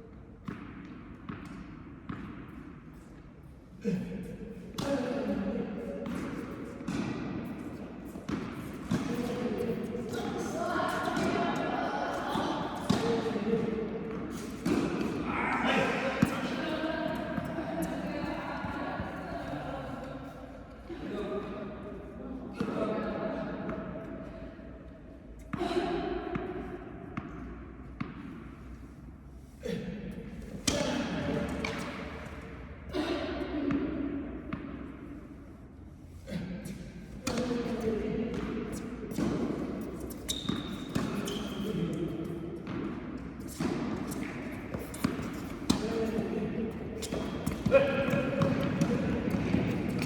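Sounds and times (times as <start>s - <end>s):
balls bouncing on indoor court: 0.0s - 21.8s, 22.4s - 35.7s, 36.3s - 50.0s
tennis balls hitting rackets: 0.2s - 3.3s, 6.0s - 20.0s, 25.4s - 29.0s, 30.0s - 35.5s, 36.4s - 50.0s.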